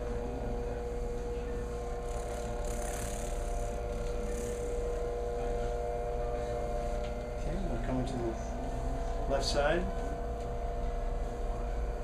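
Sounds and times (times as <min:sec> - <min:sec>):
massage machine motor hum: 0:00.0 - 0:12.0.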